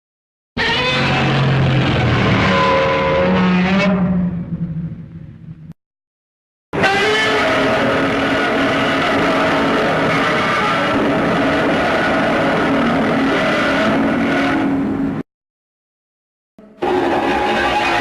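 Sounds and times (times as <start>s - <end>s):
monster roar rasping screech: 0.6s - 4.3s, 6.8s - 14.9s, 16.8s - 18.0s.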